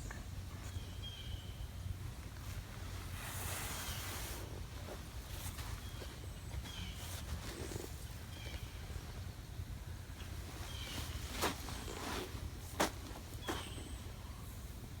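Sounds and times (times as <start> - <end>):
small birds chirping: 5.8 - 9.0, 10.2 - 12.2, 13.3 - 14.6.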